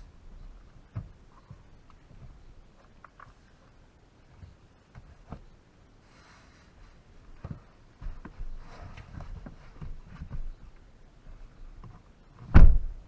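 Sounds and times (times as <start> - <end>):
loud thump: 12.5 - 12.9.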